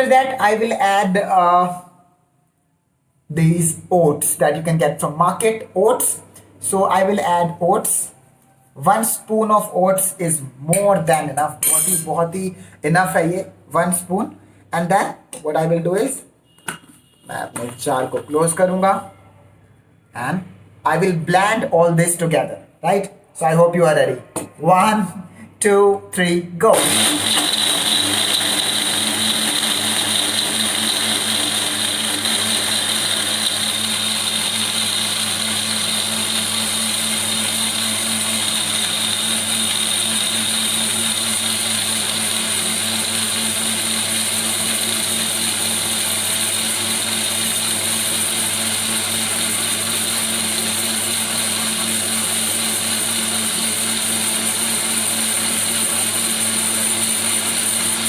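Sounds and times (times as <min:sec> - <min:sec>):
electric blender running: 0:26.7 - 0:58.0.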